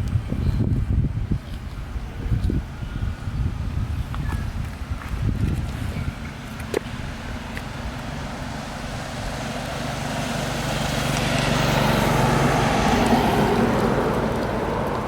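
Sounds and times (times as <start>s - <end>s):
vehicle engine passing by: 5.8s - 15.0s.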